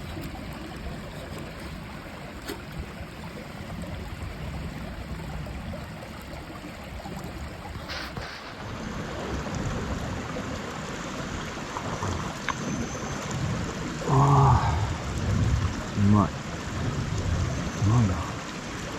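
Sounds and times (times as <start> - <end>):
stream water rushing: 0.0 - 18.9
short higher hiss: 7.8 - 8.6.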